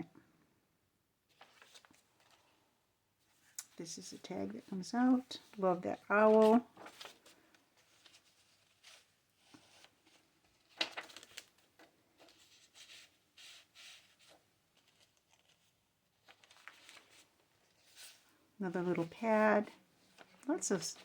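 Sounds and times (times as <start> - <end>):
paper pages rustling: 1.3 - 2.6, 5.3 - 18.4, 19.0 - 21.0.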